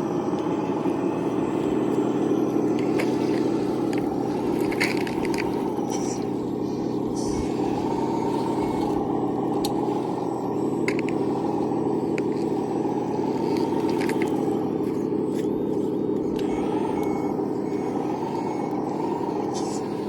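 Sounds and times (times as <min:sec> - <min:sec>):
model machine mechanical whir: 0:00.0 - 0:20.0.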